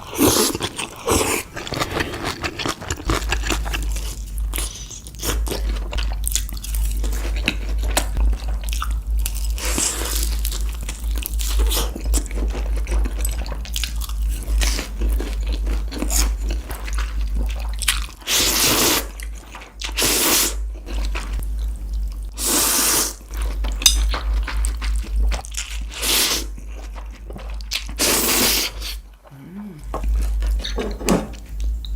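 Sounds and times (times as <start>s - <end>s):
steady low hum: 0.0s - 18.2s, 19.1s - 22.4s, 28.6s - 31.9s
person chewing crunchy food: 0.0s - 31.9s.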